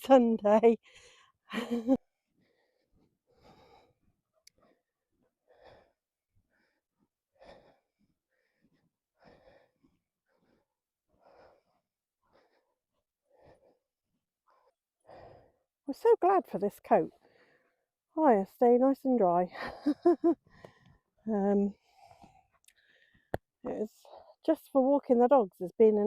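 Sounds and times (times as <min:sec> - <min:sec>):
woman breathing softly: 0:00.8 - 0:01.4, 0:02.3 - 0:13.9, 0:14.5 - 0:15.7, 0:20.4 - 0:21.1, 0:21.8 - 0:23.3.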